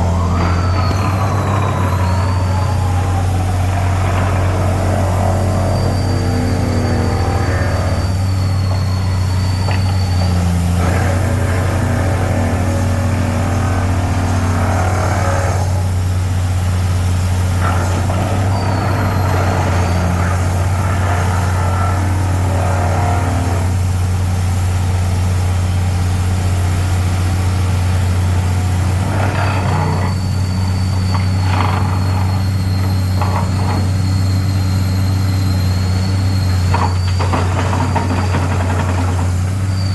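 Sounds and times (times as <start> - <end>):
vibratory hammer machine humming: 0.0 - 39.9
knocks and clatter: 36.6 - 39.6.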